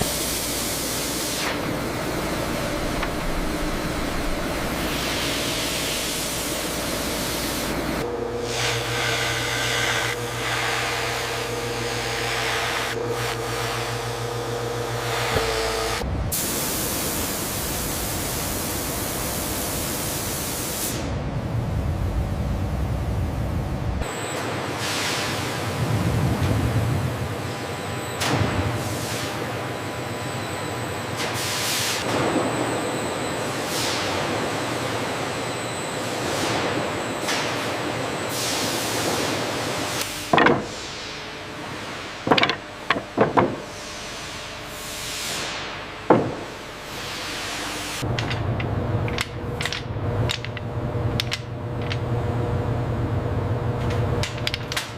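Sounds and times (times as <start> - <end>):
sawmill machinery hissing: 0.0 - 20.8
lumber boards knocking: 40.4 - 40.8, 42.3 - 43.7, 46.1 - 46.5.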